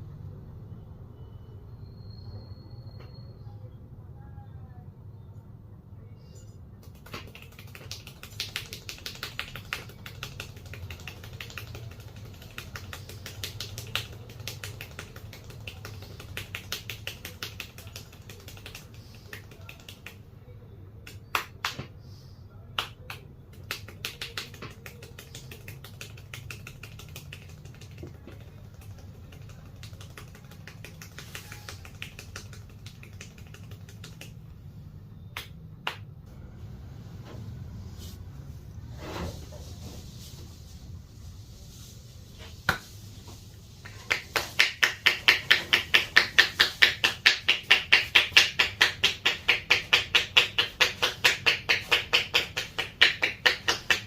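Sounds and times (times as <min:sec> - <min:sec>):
hands tapping a head: 0:06.8 - 0:20.2, 0:21.0 - 0:21.9, 0:22.8 - 0:34.4, 0:42.4 - 0:54.0.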